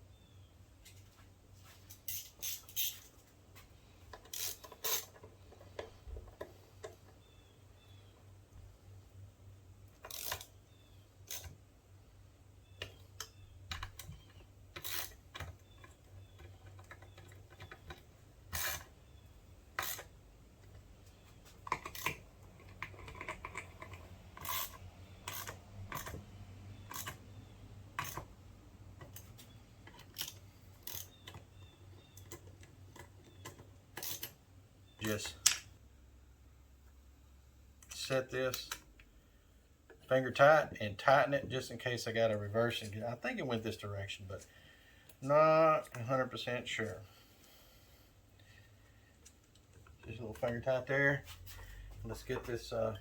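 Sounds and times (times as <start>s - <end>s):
metal parts and tools clinking: 1.8s - 3.2s, 14.8s - 18.9s.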